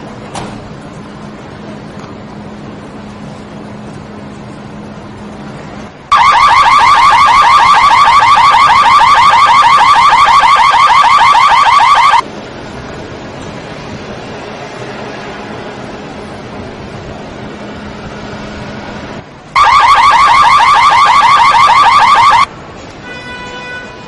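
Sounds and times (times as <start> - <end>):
car alarm siren whooping: 6.1 - 12.2, 19.6 - 22.5.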